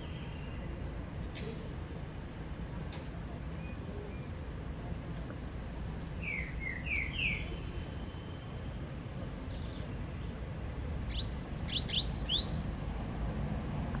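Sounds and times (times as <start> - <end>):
bird singing: 6.2 - 8.4, 11.1 - 12.6.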